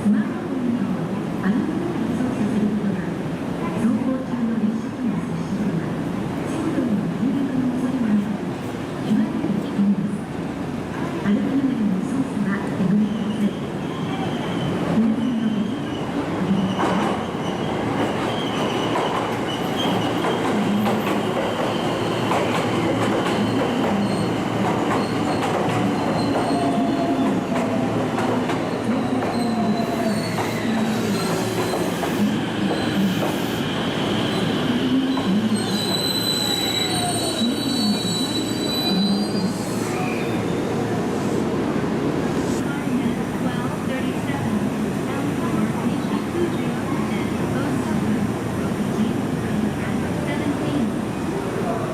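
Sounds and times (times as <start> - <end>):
train wheels squealing: 13.1 - 20.5, 23.3 - 27.3, 29.1 - 40.6
train rumbling: 14.1 - 51.9.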